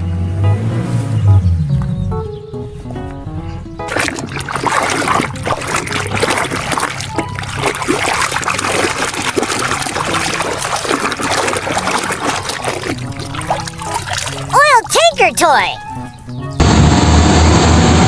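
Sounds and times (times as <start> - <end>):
water running and splashing: 3.8 - 15.0.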